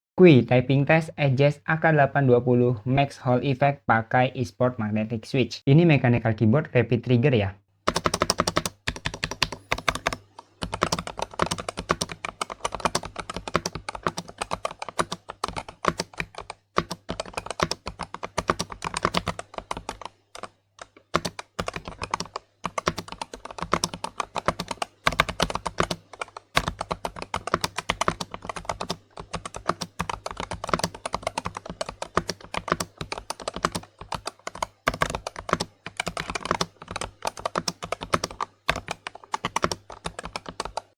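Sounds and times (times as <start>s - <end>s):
mechanical keyboard typing: 7.9s - 40.9s.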